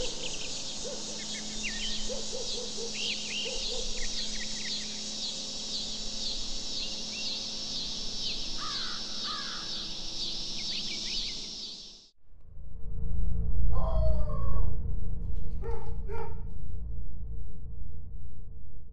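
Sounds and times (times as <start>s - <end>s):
birds chirping and calling: 0.0s - 12.0s
high-pitched insect buzz: 0.0s - 12.1s.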